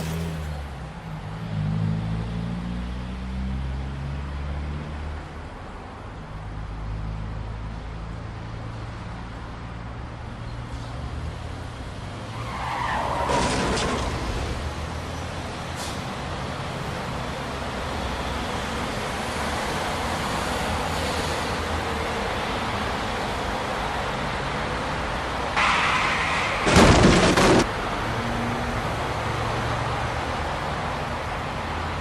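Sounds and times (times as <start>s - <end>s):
crash impacts: 0.0s - 0.6s, 25.6s - 27.8s
tyres screeching: 0.0s - 0.6s
car engines running: 0.0s - 1.4s, 24.1s - 32.0s.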